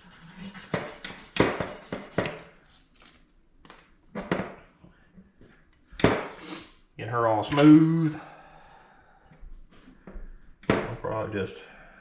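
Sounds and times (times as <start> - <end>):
sandpaper strokes: 0.0 - 2.9.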